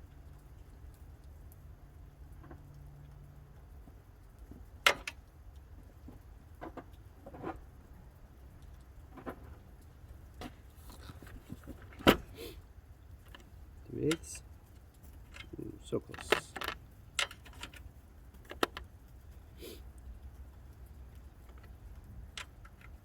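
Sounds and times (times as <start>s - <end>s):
metal clicks and knocks: 4.4s - 7.7s, 13.2s - 19.0s, 21.3s - 23.0s
hand tools clinking: 14.0s - 14.4s, 15.2s - 17.8s.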